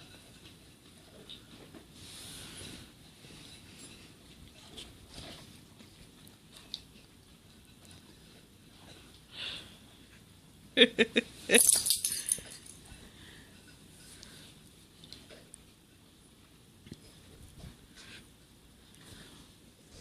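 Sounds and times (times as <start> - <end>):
soft breath: 9.3 - 10.0, 12.9 - 14.6.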